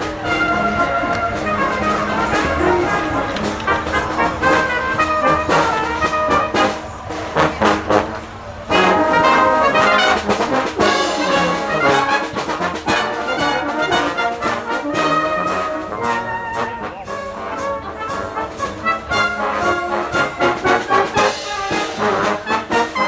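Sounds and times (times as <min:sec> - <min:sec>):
sharp percussion hits: 0:00.0 - 0:12.9
brass band playing rock: 0:00.0 - 0:23.0.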